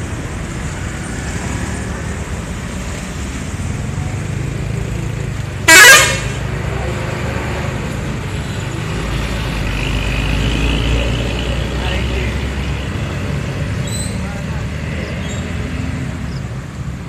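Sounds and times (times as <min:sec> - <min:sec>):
road traffic rumbling: 0:00.0 - 0:17.0
loud bus horn blast: 0:05.6 - 0:06.4.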